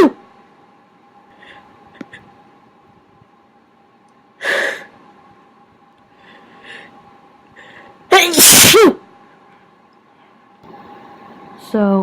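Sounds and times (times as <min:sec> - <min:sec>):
faint breaths: 0:01.2 - 0:02.3, 0:06.0 - 0:08.1
person sneezing: 0:08.1 - 0:09.0.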